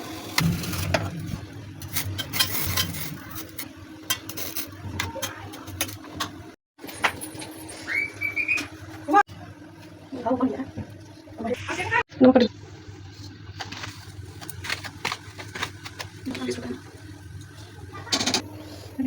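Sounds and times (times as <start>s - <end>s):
utensils clinking against cookware: 1.8s - 7.7s.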